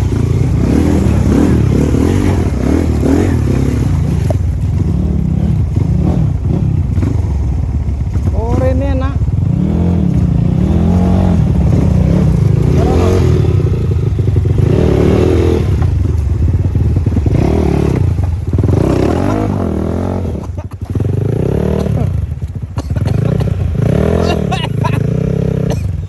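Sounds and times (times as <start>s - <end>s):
motorcycle engine revving: 0.0s - 26.0s.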